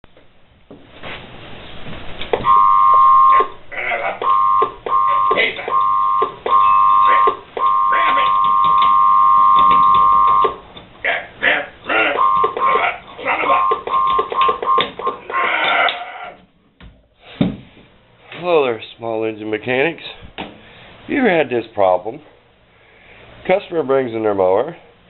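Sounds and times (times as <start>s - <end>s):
electronic beeps: 2.4s - 3.6s, 4.2s - 10.6s, 12.1s - 15.2s
person speaking: 7.1s - 8.4s.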